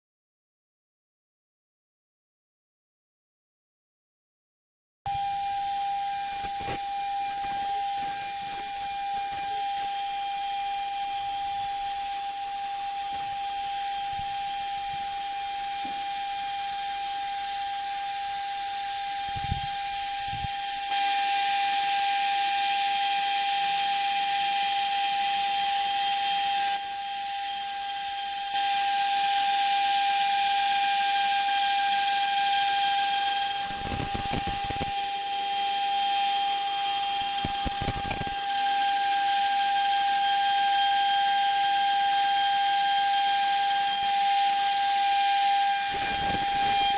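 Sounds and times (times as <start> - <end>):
router spindle high whine: 5.1 - 46.9
bit hissing through foam: 6.2 - 10.6, 19.2 - 20.6, 33.5 - 35.0, 37.2 - 38.5, 45.8 - 46.9.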